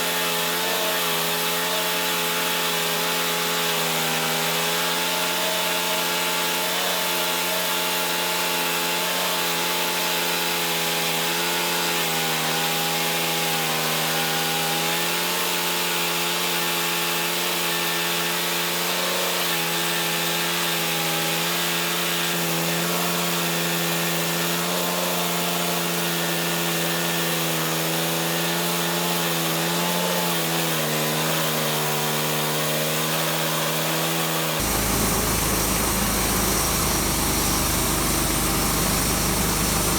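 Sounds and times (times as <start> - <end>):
band sawmill engine cutting log: 34.5 - 39.9.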